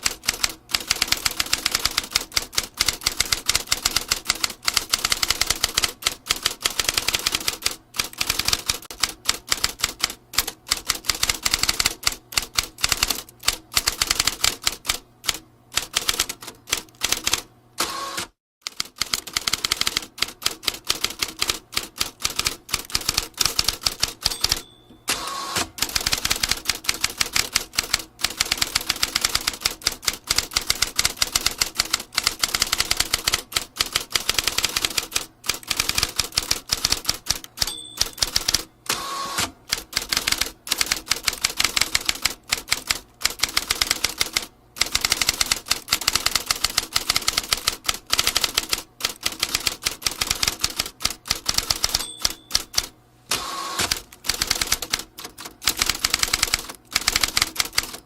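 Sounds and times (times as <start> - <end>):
typewriter carriage return: 15.8 - 58.0
typewriter margin bell ringing: 23.9 - 26.1, 37.6 - 38.8, 51.6 - 52.9
typewriter keys clattering: 39.7 - 52.9, 53.9 - 58.0.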